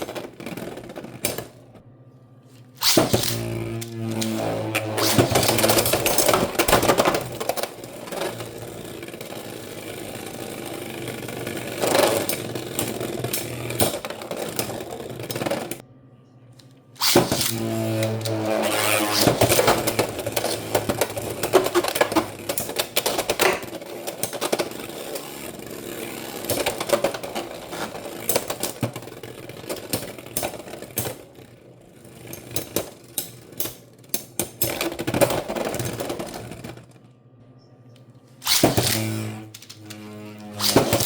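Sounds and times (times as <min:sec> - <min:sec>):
launcher whirring: 0:02.8 - 0:15.8, 0:17.0 - 0:31.5, 0:38.4 - 0:41.0.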